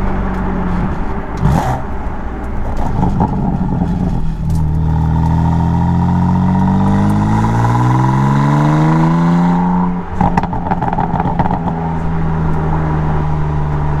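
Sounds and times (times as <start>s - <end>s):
car engine accelerating: 0.0s - 14.0s
exhaust pops and crackles: 2.4s - 5.6s, 10.2s - 11.8s.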